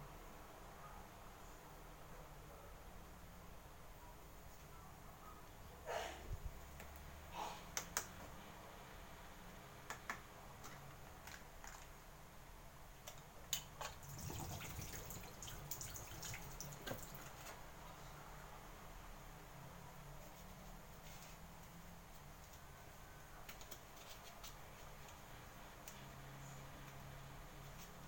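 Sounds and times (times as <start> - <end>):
humidifier hum: 12.0 - 23.6
water drips: 13.8 - 17.3.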